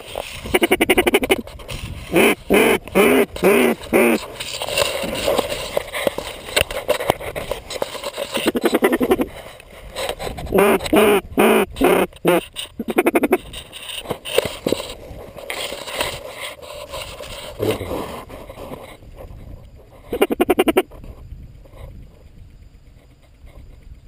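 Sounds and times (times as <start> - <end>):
ducks quacking: 0.4 - 1.4, 2.1 - 4.3, 10.5 - 13.4, 20.1 - 20.9.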